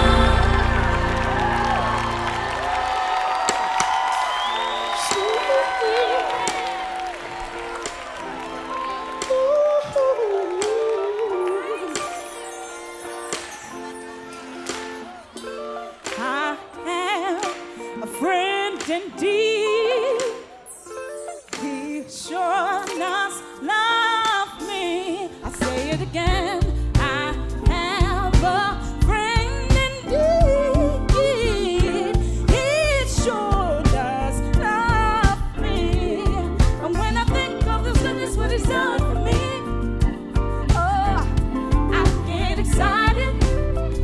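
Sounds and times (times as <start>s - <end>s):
drum and bass beat: 0.0s - 4.2s, 25.6s - 44.0s
gospel singing: 0.0s - 44.0s.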